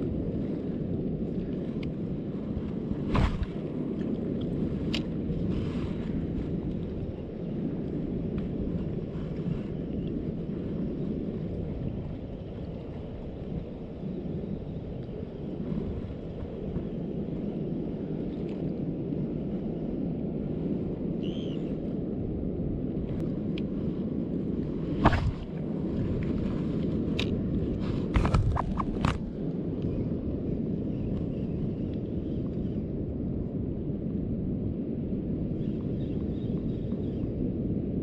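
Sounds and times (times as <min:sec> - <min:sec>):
wind buffeting microphone: 0:00.0 - 0:38.0.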